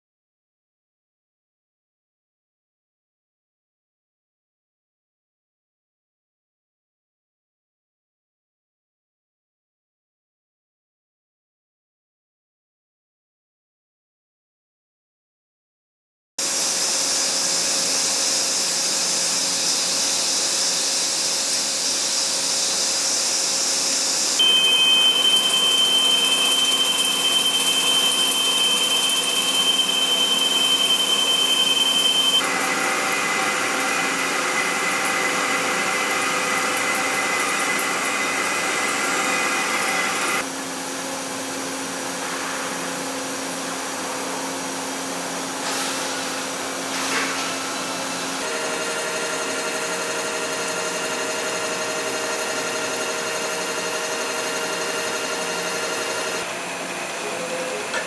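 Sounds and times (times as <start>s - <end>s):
cnc machine whining: 16.5s - 40.4s, 48.4s - 58.0s.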